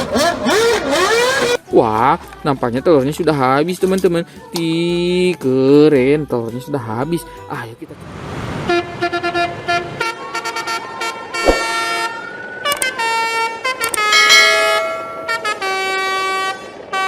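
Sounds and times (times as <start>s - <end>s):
horn-like toots: 0.0s - 1.6s, 8.6s - 17.0s
faint rising tone: 14.1s - 15.5s.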